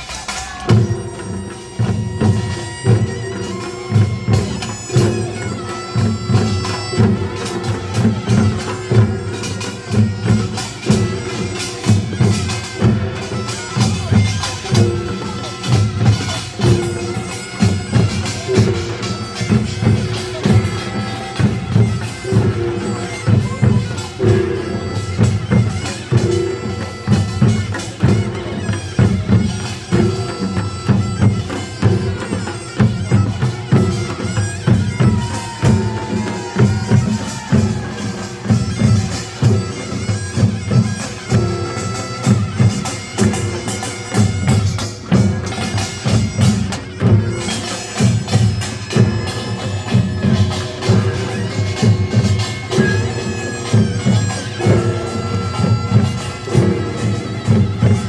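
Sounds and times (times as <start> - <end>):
drums and gongs beating: 0.0 - 58.0
reedy shawm melody: 0.0 - 58.0.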